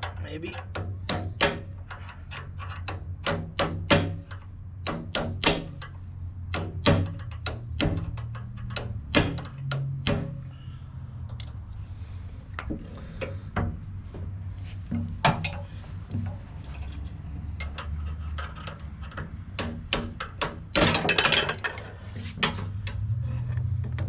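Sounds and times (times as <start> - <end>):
low steady hum: 0.0 - 24.0
hand tools clinking on metal: 15.3 - 23.1.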